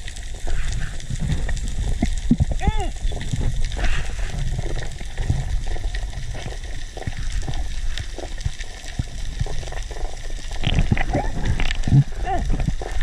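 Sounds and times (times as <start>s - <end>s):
water sloshing and bubbling: 0.0s - 13.0s
small knocks and pops: 1.9s - 3.5s, 10.5s - 13.0s.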